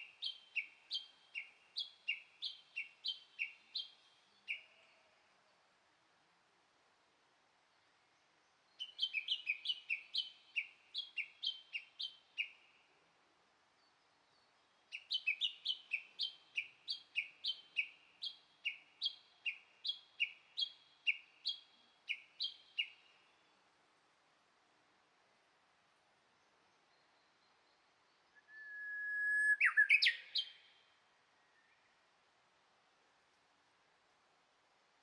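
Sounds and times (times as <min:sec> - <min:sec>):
bird calling sharp repeated notes: 0:28.4 - 0:30.7.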